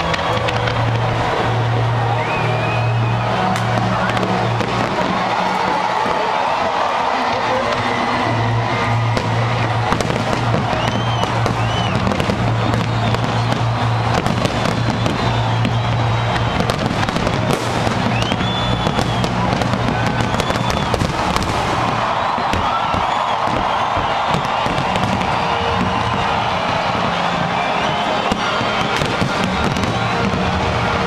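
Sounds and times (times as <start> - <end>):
crowd noise: 0.0 - 31.0
fireworks bursting and crackling: 0.0 - 31.0
music: 0.0 - 31.0
firework whistles: 8.8 - 30.3.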